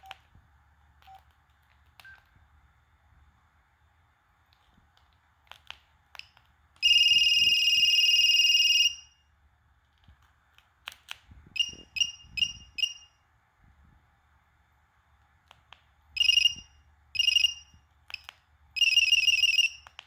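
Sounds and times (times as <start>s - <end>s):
cell phone beeping: 11.6s - 13.1s, 16.2s - 19.9s.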